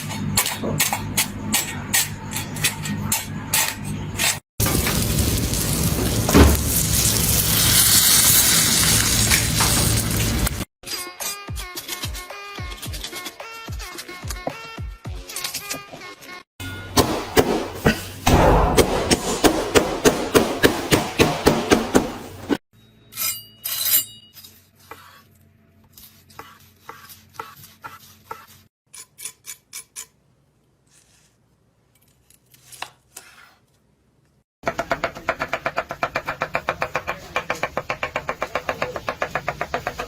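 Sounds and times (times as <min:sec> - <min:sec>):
chopping food: 0:17.0 - 0:22.6, 0:34.6 - 0:40.0.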